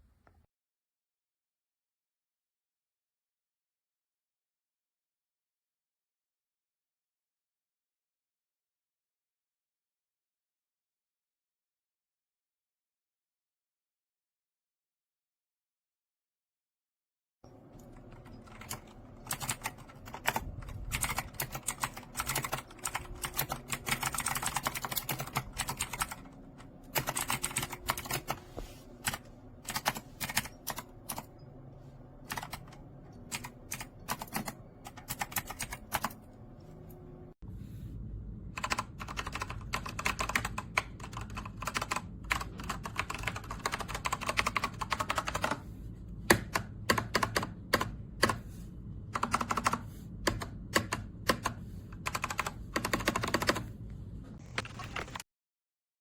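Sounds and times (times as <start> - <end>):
mechanical keyboard typing: 17.8 - 28.4, 29.0 - 31.3, 32.2 - 36.2, 38.6 - 45.6, 46.4 - 48.4, 49.1 - 53.7, 54.4 - 55.2.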